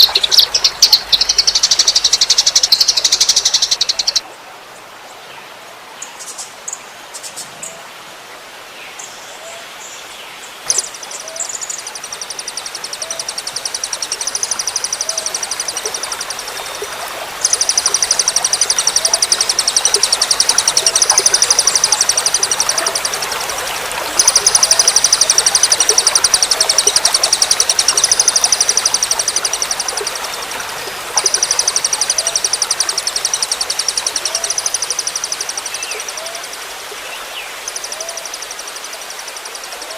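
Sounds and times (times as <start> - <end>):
songbird rapid high trills: 0.0 - 4.2, 10.7 - 36.6
trickling water: 0.0 - 5.0, 10.6 - 39.9.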